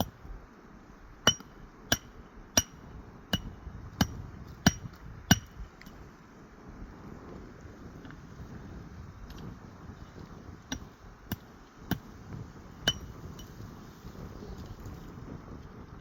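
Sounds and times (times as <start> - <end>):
hammer striking metal: 1.3 - 2.8.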